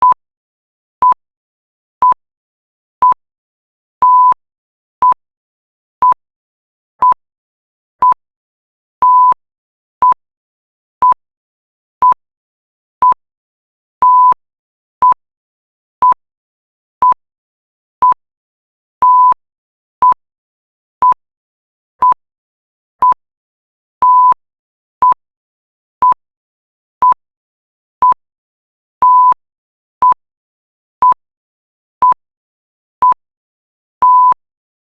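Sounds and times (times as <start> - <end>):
electronic timer beeps: 4.0 - 4.4, 9.0 - 9.4, 14.0 - 14.4, 19.0 - 19.4, 24.0 - 24.4, 29.0 - 29.4, 34.0 - 34.4.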